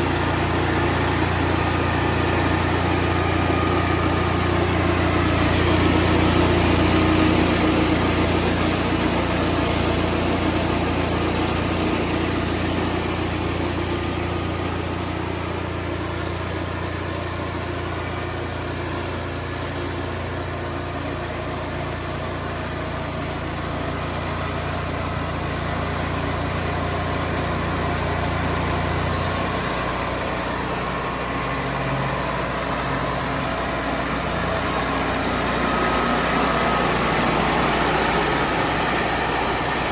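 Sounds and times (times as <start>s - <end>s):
sawmill engine running: 0.0s - 39.9s.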